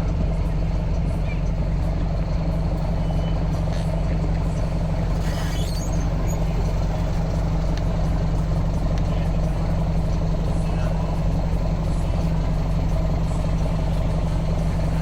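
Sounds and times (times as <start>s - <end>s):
diesel bus engine idling: 0.0s - 15.0s
brief hiss with squeak: 5.2s - 6.1s.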